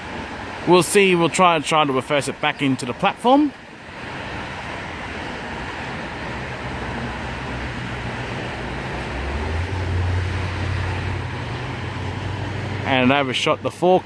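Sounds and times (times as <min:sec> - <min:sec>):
electric train rumble: 0:03.7 - 0:13.1
low hum: 0:06.5 - 0:12.9.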